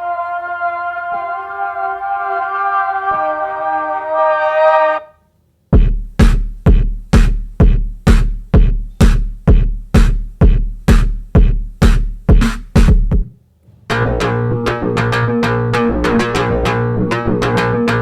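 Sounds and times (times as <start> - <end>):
drum machine kick beat: 5.7 - 13.3.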